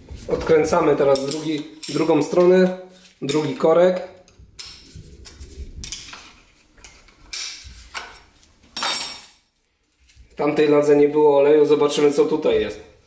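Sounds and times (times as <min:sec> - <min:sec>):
wrench clinking and scraping metal: 0:01.0 - 0:02.5.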